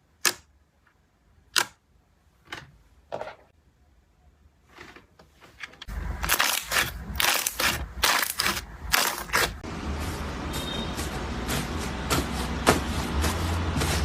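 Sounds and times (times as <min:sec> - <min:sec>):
crunchy slime crackling: 0:06.0 - 0:09.6.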